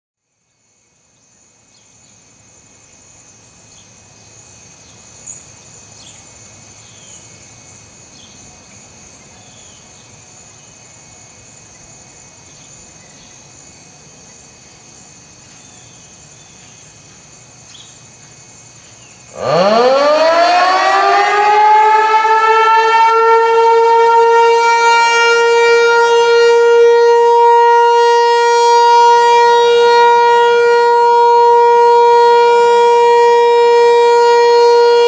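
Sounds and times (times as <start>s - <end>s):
insects trilling: 0.3s - 20.3s.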